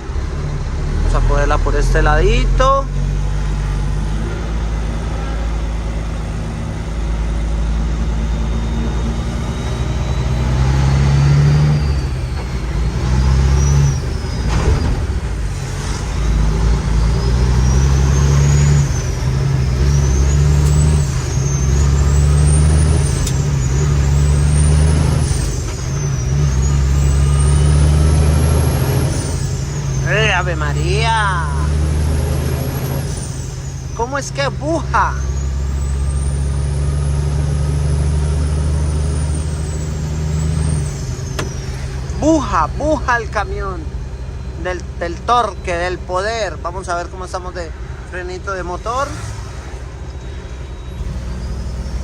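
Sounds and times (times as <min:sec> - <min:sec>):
diesel truck engine pulling hard: 0:00.0 - 0:52.0
high whistle: 0:49.8 - 0:52.0.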